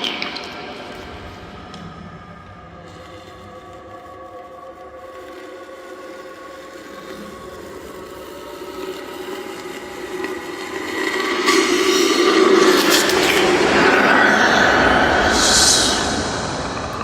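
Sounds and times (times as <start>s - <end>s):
hissing rushing noise: 13.7s - 17.0s.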